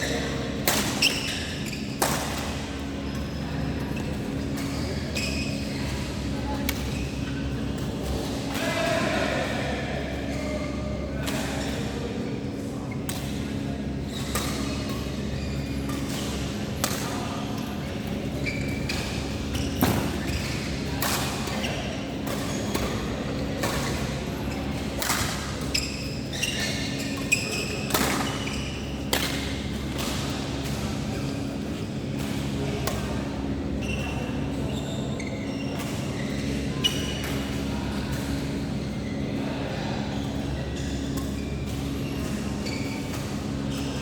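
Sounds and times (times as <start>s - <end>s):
shoe squeaks on court: 0.9s - 2.0s, 4.4s - 6.0s, 25.6s - 29.3s, 33.8s - 37.4s, 40.2s - 44.0s
racket hitting shuttlecock: 27.9s - 28.5s.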